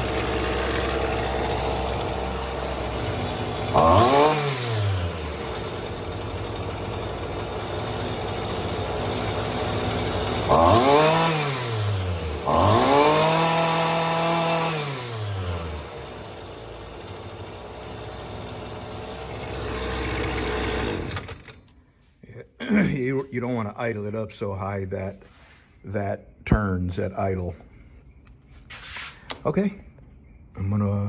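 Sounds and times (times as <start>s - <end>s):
string trimmer engine idling and revving: 0.0s - 21.8s.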